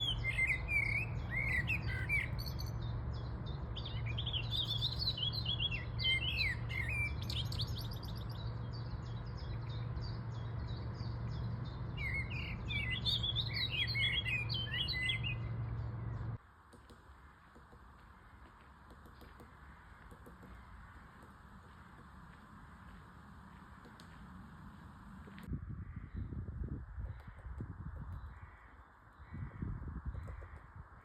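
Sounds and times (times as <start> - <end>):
birds chirping and twittering: 0.0 - 31.0
steady low hum: 15.2 - 28.6.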